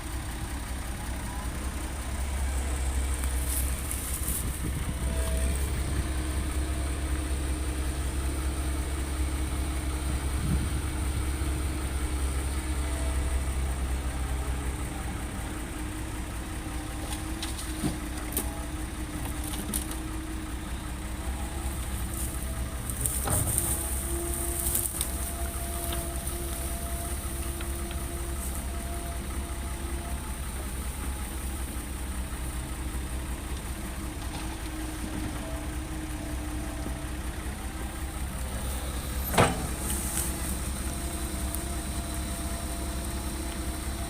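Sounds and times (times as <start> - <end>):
heavy diesel engine droning: 0.0 - 44.0.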